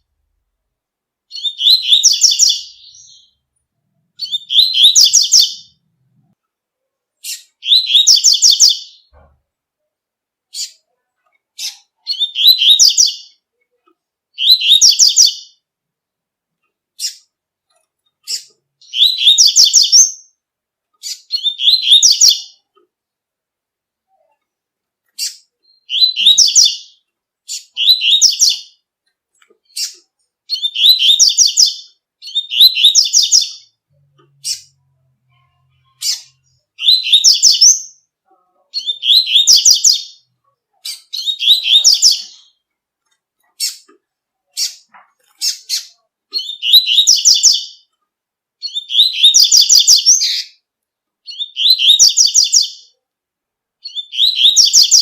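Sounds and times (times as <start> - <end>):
bird singing short high phrase: 1.3 - 3.4, 4.2 - 5.8, 7.2 - 9.1, 11.6 - 13.4, 14.4 - 15.6, 18.3 - 20.4, 21.0 - 22.6, 25.2 - 28.8, 29.8 - 33.7, 35.7 - 38.0, 45.4 - 47.9, 53.8 - 55.0.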